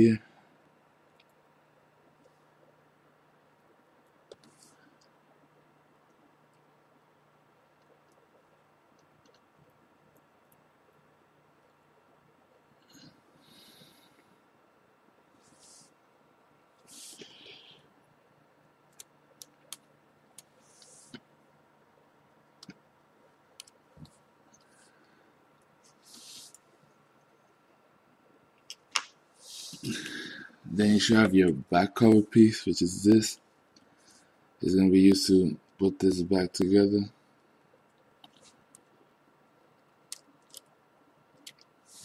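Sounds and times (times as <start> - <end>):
soft rustle: 15.3 - 16.1, 16.7 - 17.8, 20.4 - 21.4, 23.9 - 27.6, 29.3 - 30.0
small parts clicking and tapping: 39.8 - 40.8.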